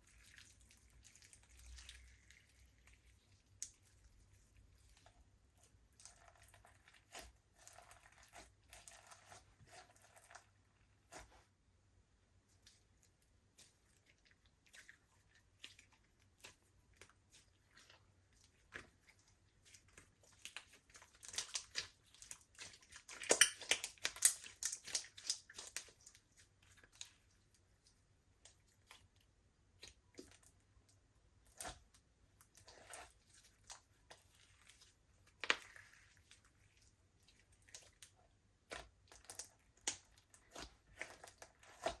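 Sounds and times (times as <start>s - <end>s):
slime squished by hand: 12.6s - 30.6s, 31.4s - 42.0s.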